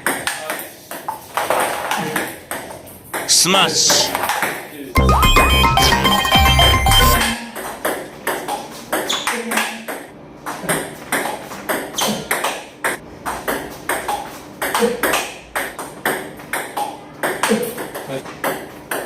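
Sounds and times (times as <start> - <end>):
musical sound effect with deep bass: 5.0 - 7.4.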